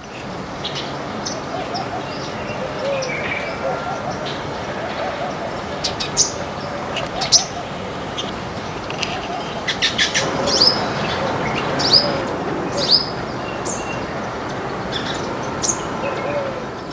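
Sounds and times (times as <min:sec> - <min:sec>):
background hiss: 0:00.0 - 0:16.9
small birds chirping: 0:00.0 - 0:16.9.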